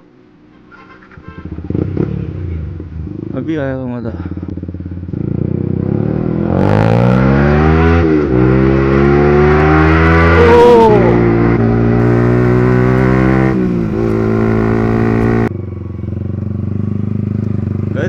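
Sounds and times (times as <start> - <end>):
motorcycle engine accelerating: 12.0 - 18.0.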